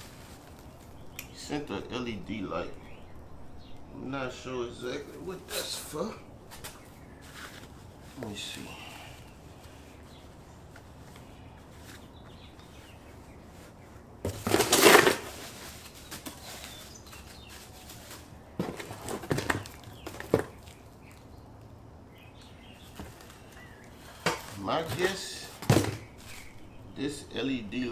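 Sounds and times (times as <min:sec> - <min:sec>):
packaging crinkling rustle: 0:14.3 - 0:21.3.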